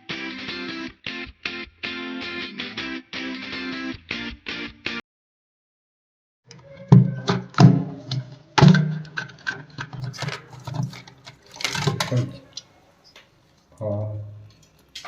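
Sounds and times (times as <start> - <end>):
clicks and knocks on toilet cistern: 6.9 - 11.0.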